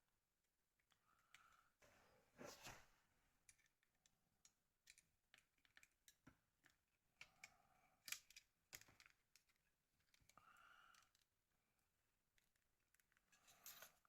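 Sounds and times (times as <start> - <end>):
brief scrape: 2.4 - 2.9
plastic parts clicking and tapping: 4.8 - 7.4.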